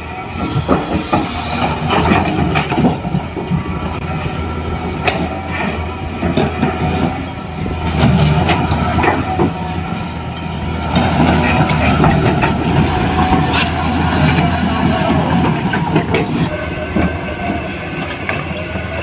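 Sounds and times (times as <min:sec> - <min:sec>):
toy motors and gears whirring: 0:00.0 - 0:17.2.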